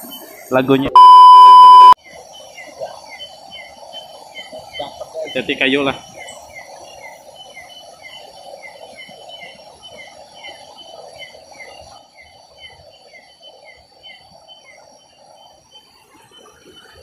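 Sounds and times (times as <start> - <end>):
insects trilling: 0.0 - 17.0
short falling chirp: 1.0 - 2.0
steady rushing hiss: 2.0 - 17.0.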